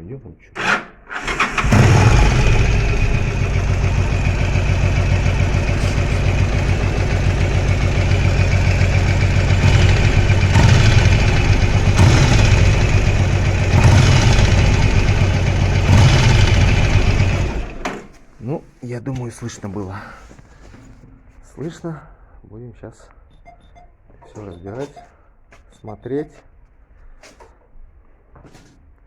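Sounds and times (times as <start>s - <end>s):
small engine knock: 0.6s - 18.1s
motorcycle engine idling: 1.2s - 18.1s.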